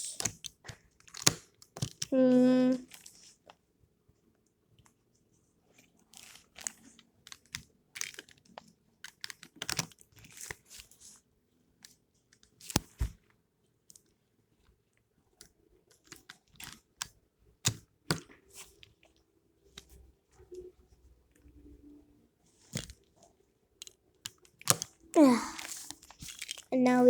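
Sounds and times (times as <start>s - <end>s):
plastic puzzle pieces clicking: 0.2s - 2.1s, 9.0s - 10.6s, 23.8s - 25.0s.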